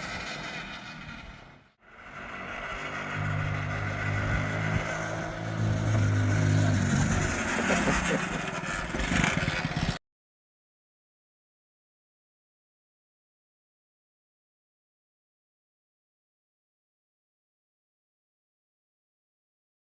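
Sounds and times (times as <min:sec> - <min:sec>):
small engine revving: 0:00.0 - 0:10.0.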